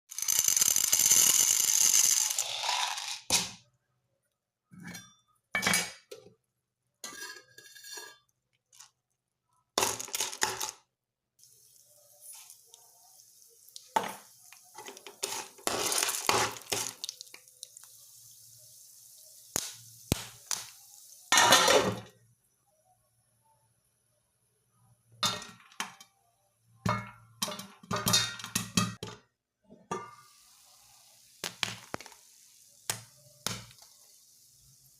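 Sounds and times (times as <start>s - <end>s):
loud noisy pour: 0.1s - 3.0s
popcorn popping: 0.1s - 3.5s, 9.8s - 10.9s, 13.8s - 17.4s, 19.5s - 22.1s, 26.8s - 30.2s, 31.4s - 34.0s
metal pan and utensils clinking: 4.8s - 6.3s, 7.0s - 8.3s, 13.9s - 17.3s, 21.3s - 22.1s, 25.2s - 26.2s, 26.9s - 30.4s
hiss in the pan: 11.4s - 22.1s, 29.9s - 34.9s.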